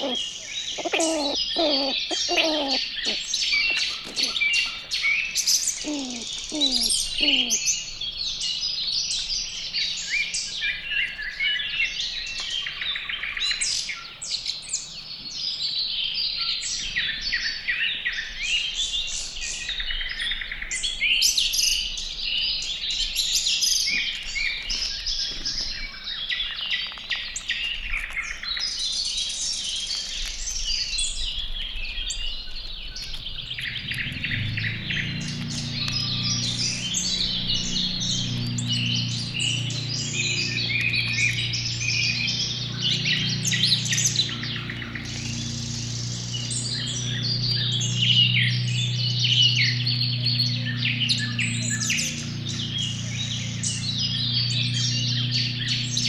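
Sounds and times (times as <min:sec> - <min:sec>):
low falling bird calls: 0:00.0 - 0:13.1, 0:32.5 - 0:56.0
birds chirping and singing: 0:00.0 - 0:13.2, 0:32.8 - 0:56.0.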